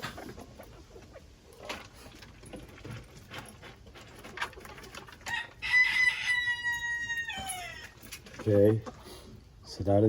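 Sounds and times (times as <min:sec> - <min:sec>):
rooster crowing: 0:05.3 - 0:08.0.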